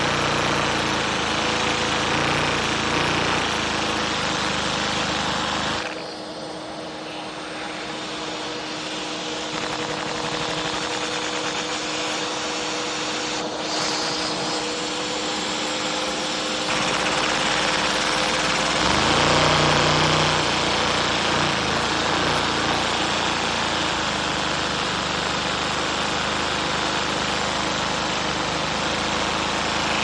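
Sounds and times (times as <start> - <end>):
turbine engine whining: 0.0 - 30.0.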